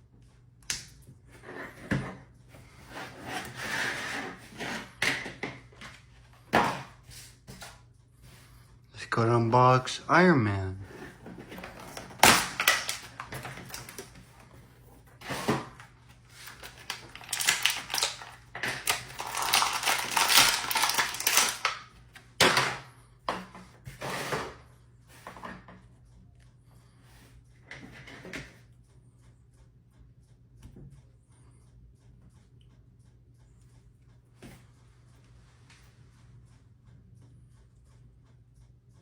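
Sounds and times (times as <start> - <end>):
packaging crinkling and tearing: 11.6 - 14.1, 16.4 - 21.8.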